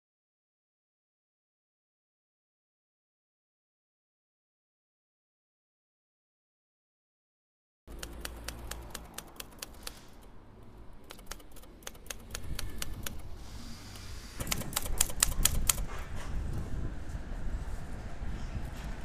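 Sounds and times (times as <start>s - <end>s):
typewriter keys striking: 7.9s - 10.3s, 11.0s - 13.4s, 14.4s - 15.9s.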